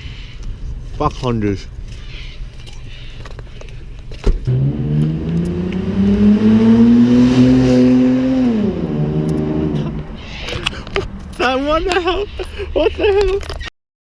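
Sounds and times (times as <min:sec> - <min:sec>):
car engine accelerating: 0:04.4 - 0:11.8.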